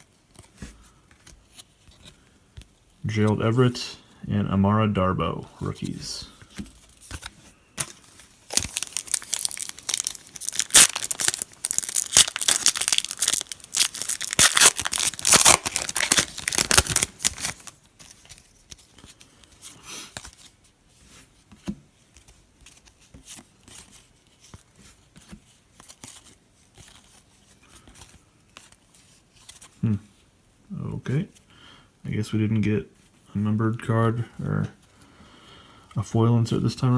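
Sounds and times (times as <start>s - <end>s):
cards being handled: 0.0s - 3.8s, 5.6s - 29.8s
foil wrapper tearing and crinkling: 8.5s - 17.8s.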